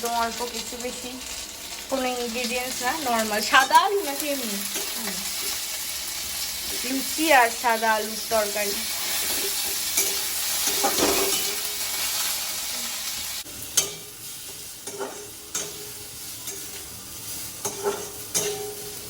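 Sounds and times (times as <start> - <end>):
curry sizzling in a pan: 0.0 - 19.0
utensil scraping and clinking on pan: 8.9 - 12.3, 13.7 - 19.0.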